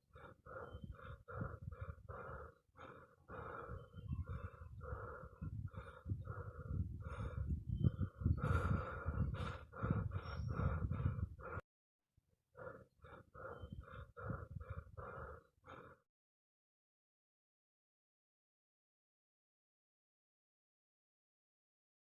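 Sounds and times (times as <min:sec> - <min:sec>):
rapid panting: 0:00.0 - 0:11.6, 0:12.6 - 0:16.0.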